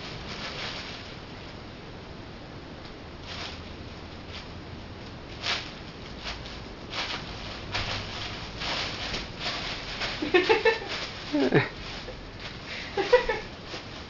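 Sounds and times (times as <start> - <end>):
bubble wrap crinkling: 0.0 - 1.5, 5.3 - 14.0.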